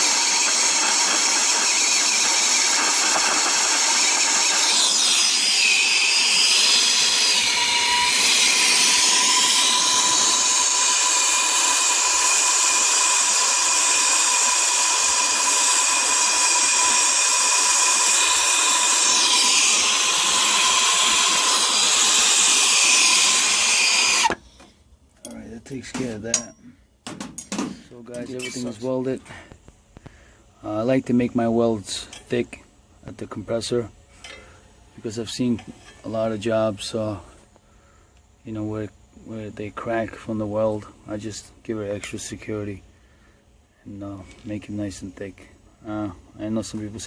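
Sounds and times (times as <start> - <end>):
torch burning with hiss: 0.0 - 24.4.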